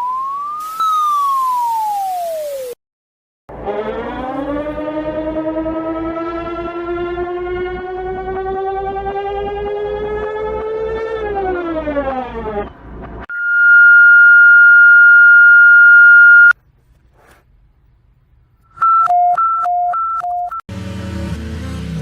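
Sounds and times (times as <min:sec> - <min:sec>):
siren glide: 0:03.5 - 0:16.5
loud steady high tone: 0:13.3 - 0:16.5
high-low two-tone beep: 0:13.3 - 0:16.6.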